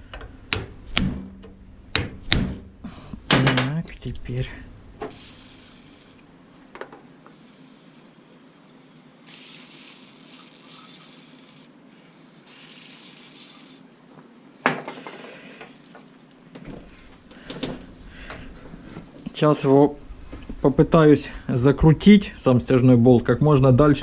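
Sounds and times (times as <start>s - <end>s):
high hissing bursts: 5.0s - 6.3s, 7.2s - 14.0s.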